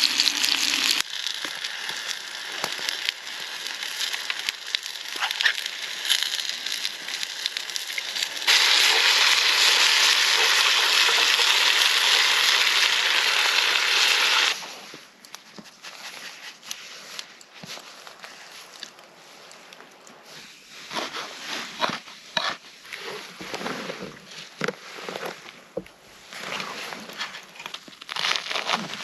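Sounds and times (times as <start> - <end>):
food crackling and spitting: 0.0 - 14.6, 26.3 - 29.0
loud steady sizzle: 0.0 - 14.7.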